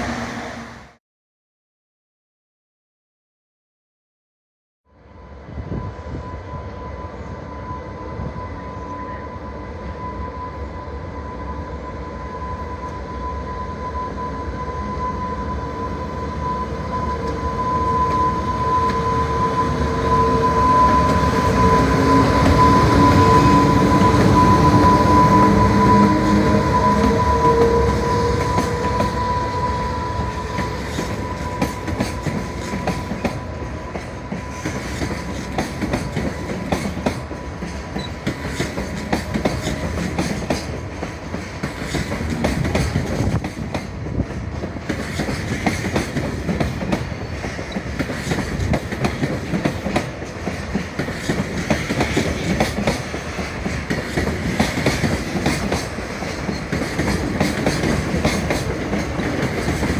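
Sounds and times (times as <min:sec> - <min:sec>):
train wheels clattering over rail joints: 0:30.6 - 0:59.9.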